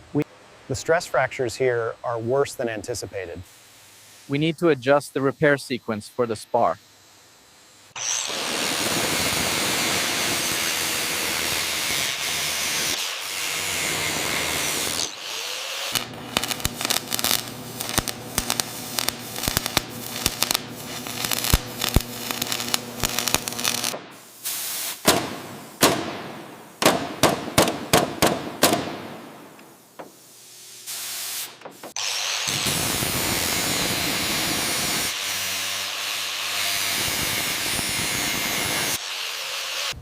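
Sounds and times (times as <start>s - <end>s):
loud spraying hiss: 15.8s - 26.8s
steady hum: 16.0s - 24.4s.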